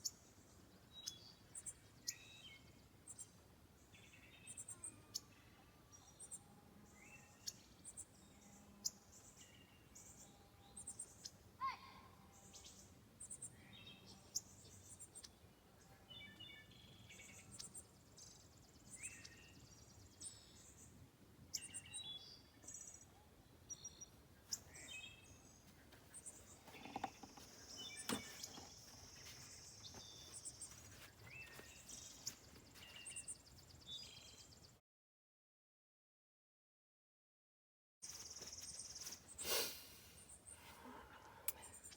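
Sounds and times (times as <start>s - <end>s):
birds chirping: 21.5s - 34.7s, 38.0s - 41.9s.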